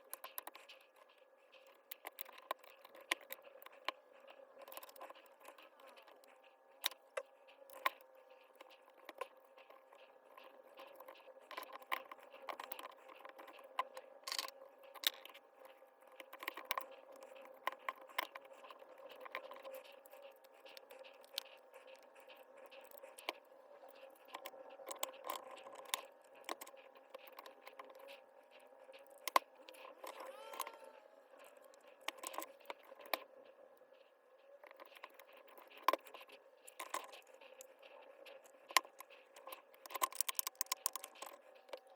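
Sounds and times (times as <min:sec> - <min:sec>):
faint steady hum: 0:00.0 - 0:41.9.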